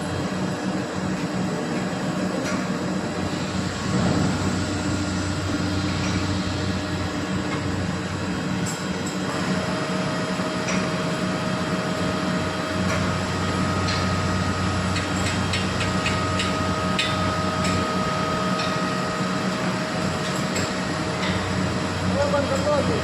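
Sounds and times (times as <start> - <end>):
low hum: 3.2 - 8.7.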